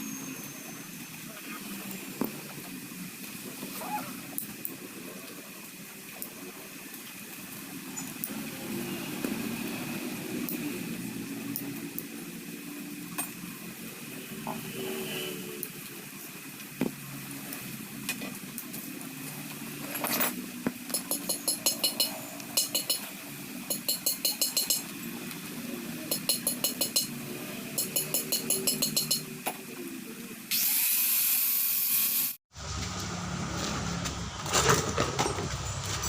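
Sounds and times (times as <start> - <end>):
ratchet wrench clicking: 20.9 - 23.1, 23.7 - 24.9, 26.1 - 29.3.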